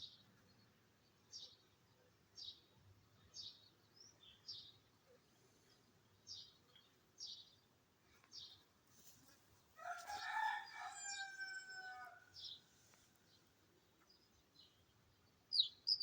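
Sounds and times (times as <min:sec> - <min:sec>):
small bird chirping: 0:13.4 - 0:16.0.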